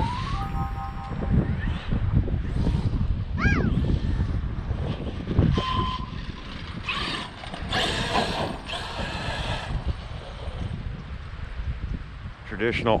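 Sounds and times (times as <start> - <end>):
rc truck throttle bursts: 0.0 - 10.6
drivetrain gear noise: 5.6 - 11.3.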